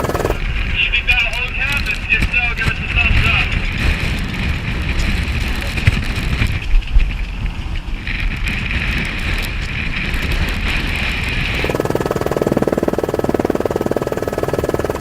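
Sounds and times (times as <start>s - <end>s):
storm wind: 0.0s - 15.0s
rain: 3.6s - 11.5s.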